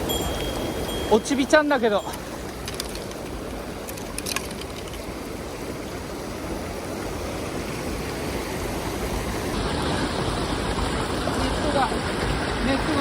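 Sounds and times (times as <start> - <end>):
stream water rushing over rocks: 0.0 - 13.0.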